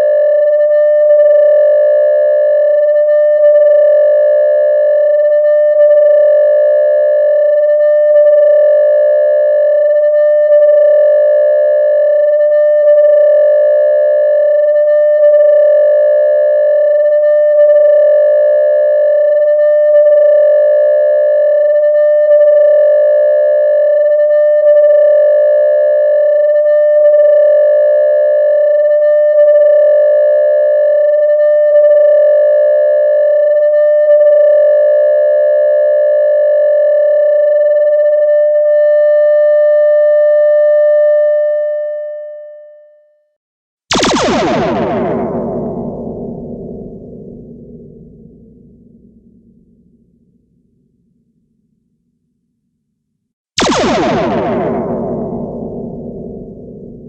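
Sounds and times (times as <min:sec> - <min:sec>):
warbling electronic tone: 0:43.9 - 0:50.7, 0:53.6 - 0:57.0.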